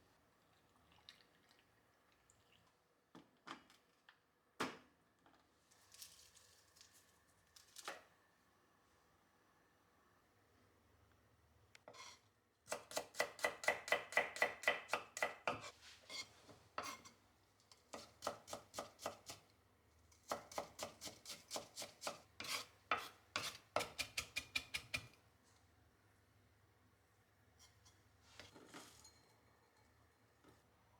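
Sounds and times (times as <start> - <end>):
knife chopping on cutting board: 12.7 - 15.7, 20.3 - 25.1.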